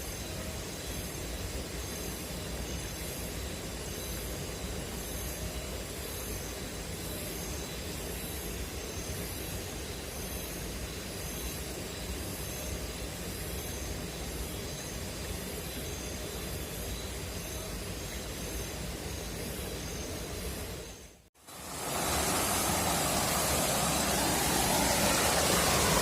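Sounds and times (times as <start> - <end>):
insects chirping: 0.0 - 26.0
river water rushing: 21.4 - 26.0.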